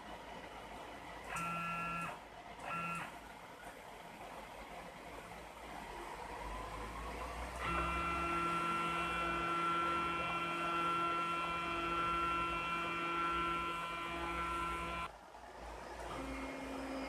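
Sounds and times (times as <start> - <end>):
stepper motor whine: 6.7 - 15.1.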